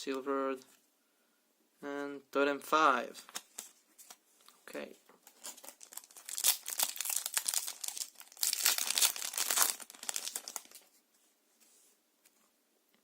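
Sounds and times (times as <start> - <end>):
foil wrapper tearing and crinkling: 5.3 - 10.8.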